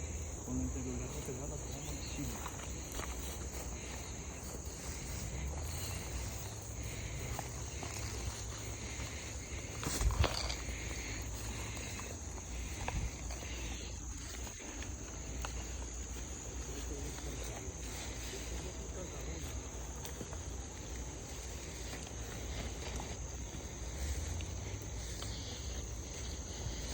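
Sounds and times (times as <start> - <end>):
insects chirring: 0.0 - 26.9
small clicks and rustles: 9.6 - 18.6.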